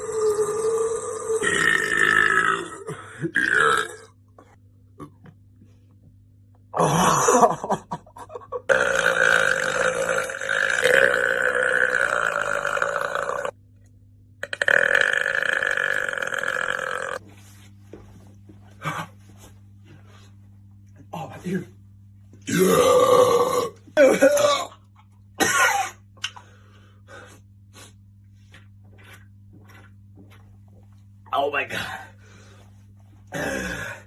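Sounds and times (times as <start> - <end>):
men burping: 0.0 - 4.1, 6.7 - 7.8, 8.6 - 13.5, 14.4 - 17.2, 22.4 - 26.0, 33.3 - 34.0.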